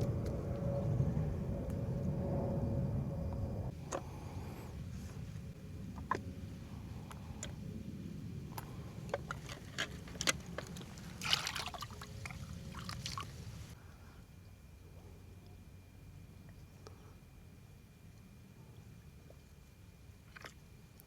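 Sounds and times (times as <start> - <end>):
steady low rumble: 0.0 - 19.7
water splashing and trickling: 9.2 - 13.8.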